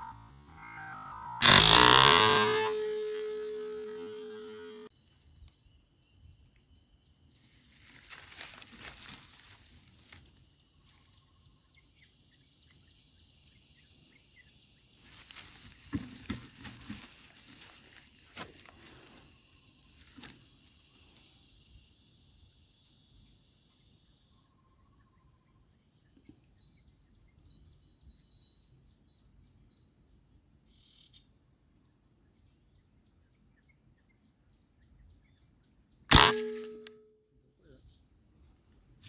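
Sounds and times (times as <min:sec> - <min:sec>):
insects buzzing: 0:00.0 - 0:06.4, 0:12.8 - 0:25.3
air rifle shot: 0:36.1 - 0:36.9.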